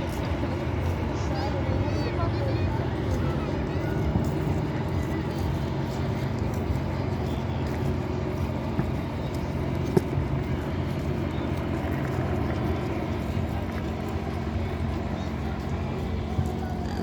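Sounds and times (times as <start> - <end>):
low engine hum: 0.0 - 17.0.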